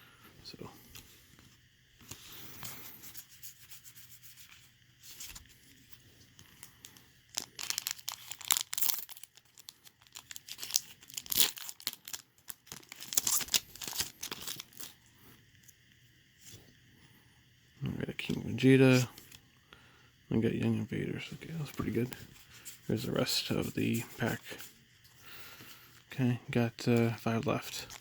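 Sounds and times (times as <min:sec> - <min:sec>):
foil wrapper tearing and crinkling: 0:06.5 - 0:15.1, 0:27.0 - 0:28.0.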